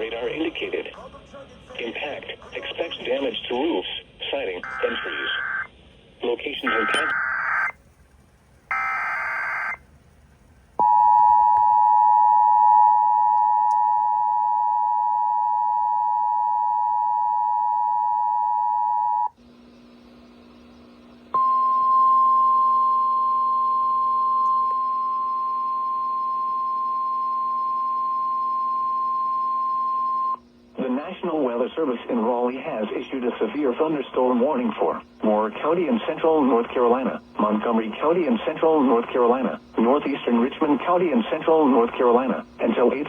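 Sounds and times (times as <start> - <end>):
low hum: 2.8 - 43.0
two-tone attention signal: 6.6 - 7.7
steady warning alarm tone: 6.6 - 7.8, 8.7 - 9.8, 10.8 - 19.4, 21.4 - 30.4.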